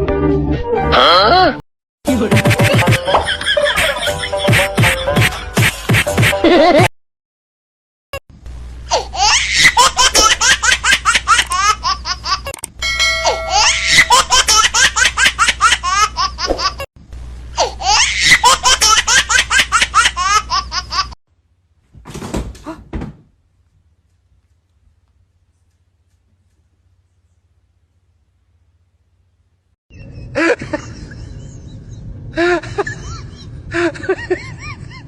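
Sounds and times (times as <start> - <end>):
hearty laughter: 30.3 - 35.0.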